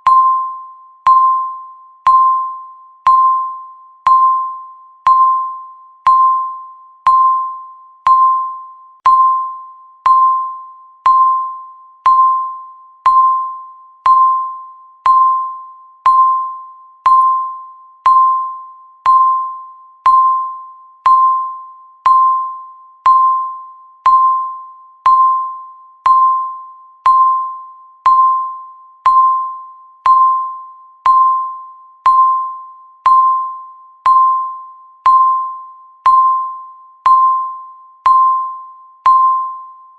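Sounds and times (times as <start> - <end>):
timer beeping: 0.0 - 39.9.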